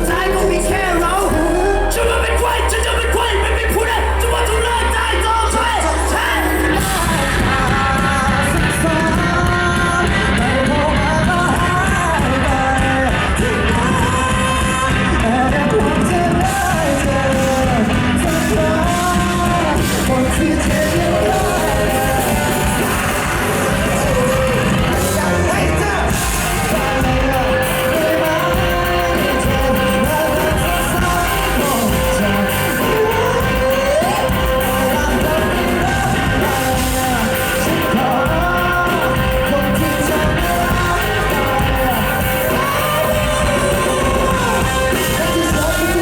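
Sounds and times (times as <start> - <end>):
live pop-rock band: 0.0 - 46.0
person singing: 0.0 - 46.0.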